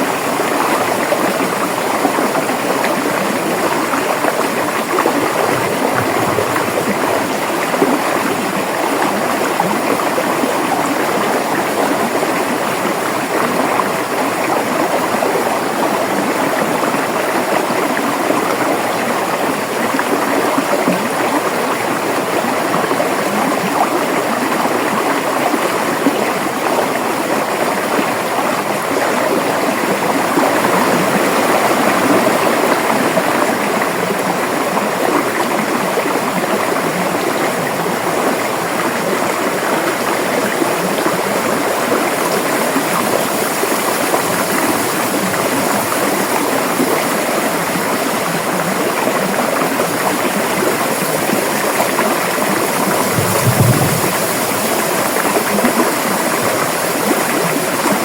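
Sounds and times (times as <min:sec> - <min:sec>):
river water flowing: 0:00.0 - 0:58.0
brief low thump: 0:53.1 - 0:54.4.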